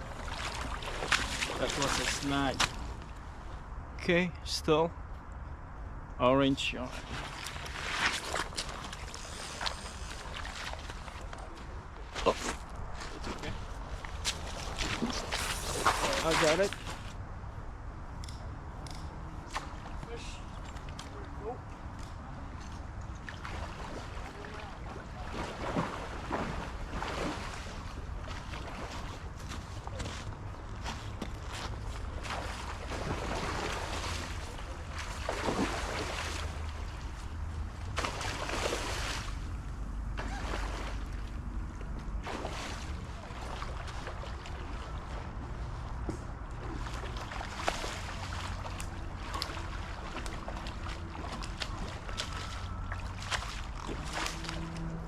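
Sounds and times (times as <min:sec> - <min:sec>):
water splashing strokes: 0:00.0 - 0:03.0, 0:07.0 - 0:17.2, 0:42.2 - 0:45.8, 0:46.6 - 0:55.0.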